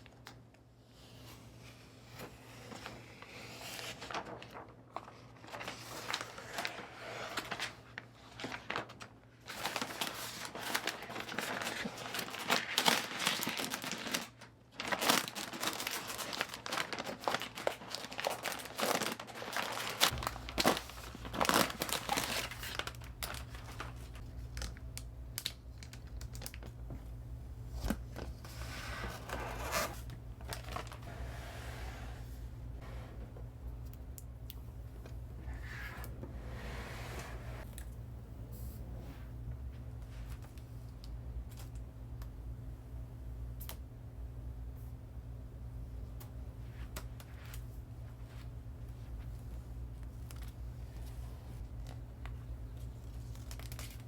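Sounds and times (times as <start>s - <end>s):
low steady hum: 0.0s - 12.6s, 13.3s - 54.0s
packaging wrap crinkling and tearing: 4.0s - 4.7s, 8.4s - 26.8s, 29.6s - 31.1s, 51.7s - 54.0s.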